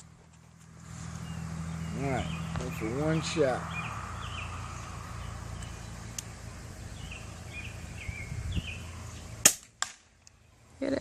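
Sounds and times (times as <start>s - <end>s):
low background rumble: 0.0s - 10.8s
birds chirping: 0.0s - 11.0s
air pistol shot pop: 9.4s - 10.1s.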